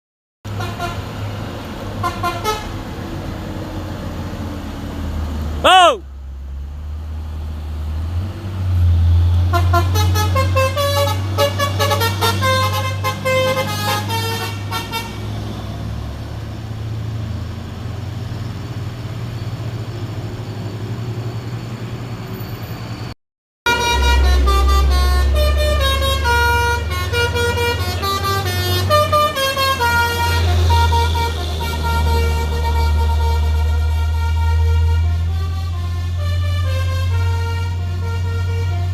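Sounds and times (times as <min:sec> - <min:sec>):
diesel truck engine running: 0:23.7 - 0:38.9
musical air horn melody: 0:23.7 - 0:38.9.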